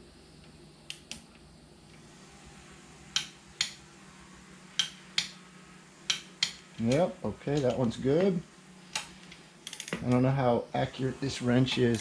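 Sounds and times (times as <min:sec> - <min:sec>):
torque wrench clicking: 0:08.9 - 0:10.1, 0:11.7 - 0:12.0.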